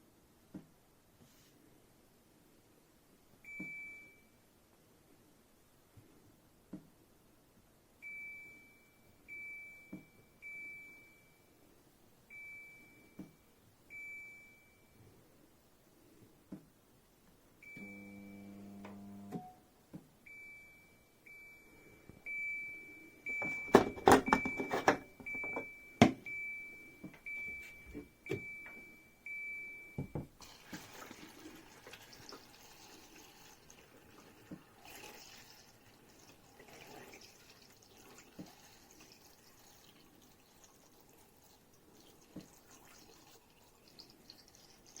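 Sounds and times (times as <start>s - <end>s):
low electronic buzz: 17.8s - 19.6s
water running: 30.4s - 45.0s.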